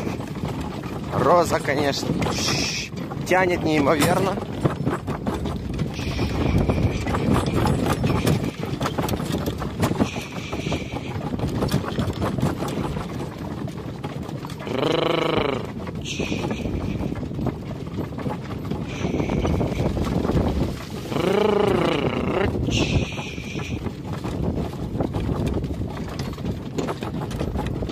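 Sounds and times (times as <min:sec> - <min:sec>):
horse hoofbeats: 0:00.0 - 0:27.9
wind noise on microphone: 0:00.0 - 0:27.9.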